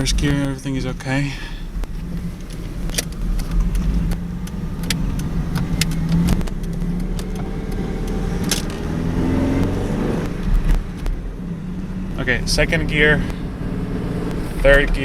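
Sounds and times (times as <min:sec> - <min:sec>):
car engine accelerating: 0:00.0 - 0:15.0.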